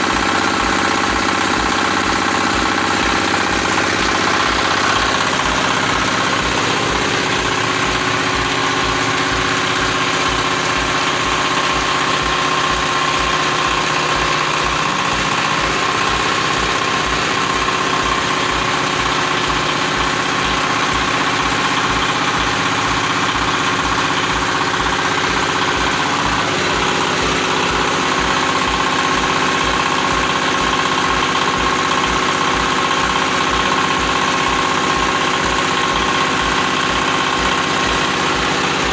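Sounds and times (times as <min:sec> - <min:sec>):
diesel engine thudding: 0:00.0 - 0:38.9
high whine: 0:02.0 - 0:30.3.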